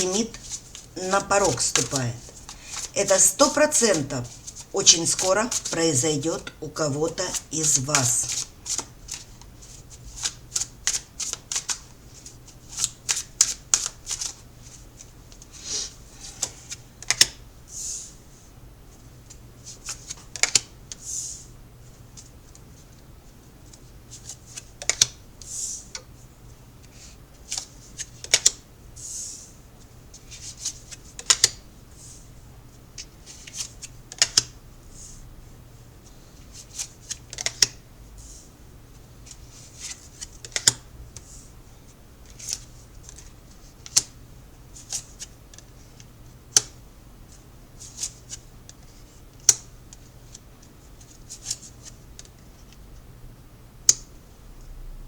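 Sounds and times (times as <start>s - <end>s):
cards shuffling: 0.0s - 14.8s
faint low hum: 20.7s - 55.0s.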